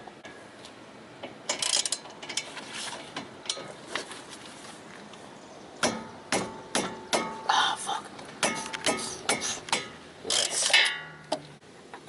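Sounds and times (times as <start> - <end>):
loud metal clanks: 8.4 - 11.4.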